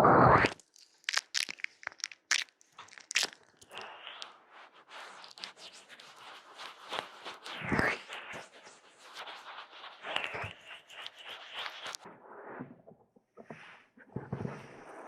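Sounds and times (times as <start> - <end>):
crackling crunchy strokes: 0.4 - 12.0
hands rubbing on microphone: 3.6 - 12.0.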